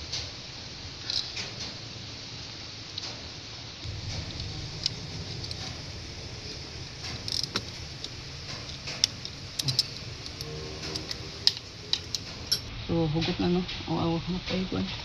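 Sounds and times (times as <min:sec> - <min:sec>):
steady low hum: 0:00.0 - 0:15.0
metallic clicks of hand tools: 0:07.3 - 0:12.7.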